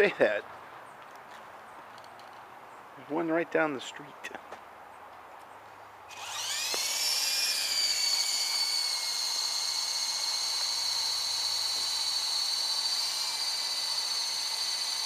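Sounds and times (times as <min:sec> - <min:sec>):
model helicopter motor whining: 0:06.1 - 0:15.0.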